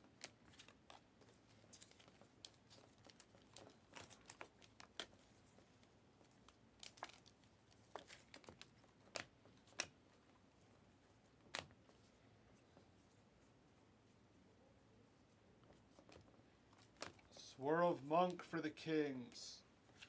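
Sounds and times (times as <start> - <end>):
cards and wrappers crinkling: 0.2 - 9.9.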